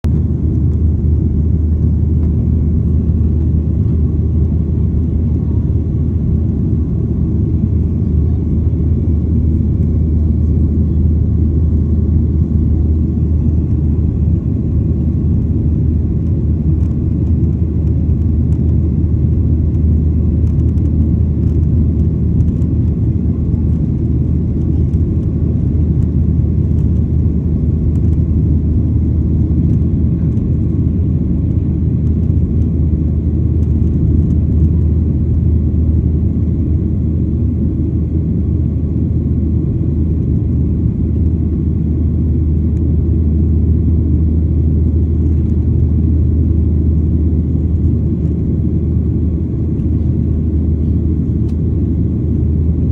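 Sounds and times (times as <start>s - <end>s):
steady low rumble: 0.0s - 52.9s.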